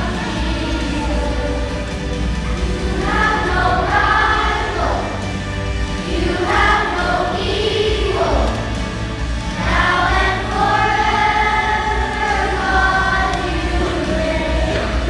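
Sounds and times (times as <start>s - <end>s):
choir singing: 0.0s - 15.0s.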